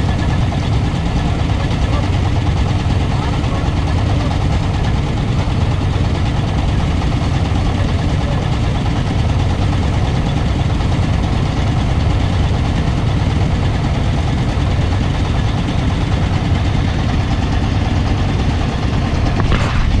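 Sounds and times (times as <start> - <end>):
ship engine rumbling: 0.0 - 20.0.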